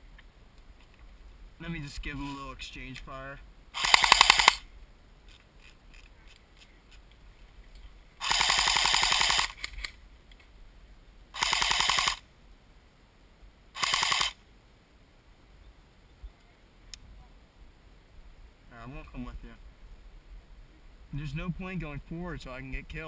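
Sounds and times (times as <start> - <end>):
airsoft gun firing bursts: 3.8 - 4.6, 8.2 - 9.7, 11.4 - 12.2, 13.8 - 14.4.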